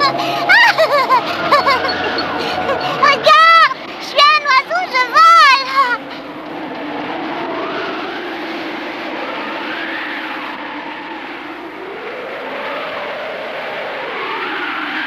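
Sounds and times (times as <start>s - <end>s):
strong wind rushing: 0.0s - 15.0s
wind whistling: 0.0s - 15.0s.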